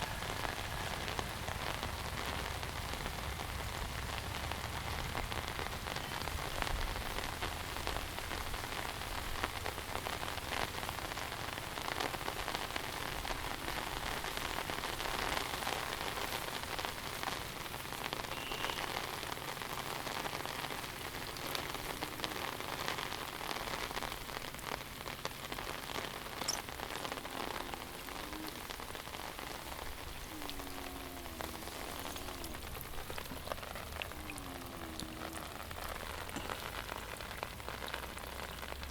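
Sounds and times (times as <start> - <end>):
heavy rain: 0.0 - 38.9
faint wavering calls: 18.2 - 19.1, 26.3 - 37.8.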